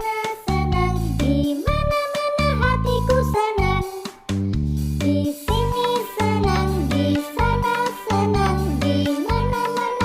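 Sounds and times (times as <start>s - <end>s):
upbeat children's song: 0.0s - 10.0s
bouncy bass line: 0.5s - 9.6s.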